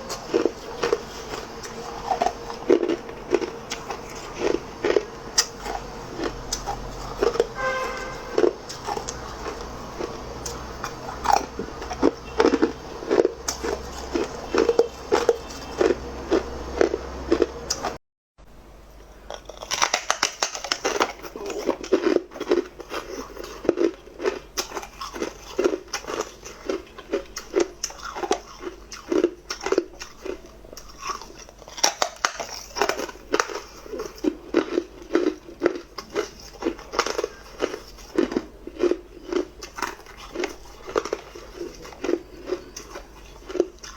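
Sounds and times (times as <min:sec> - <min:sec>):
ice being crunched and chewed: 0:00.0 - 0:18.0, 0:19.0 - 0:43.9.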